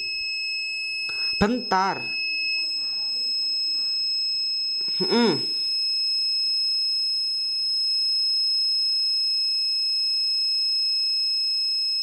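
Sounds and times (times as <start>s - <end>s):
parking sensor buzzer tone: 0.0s - 12.0s.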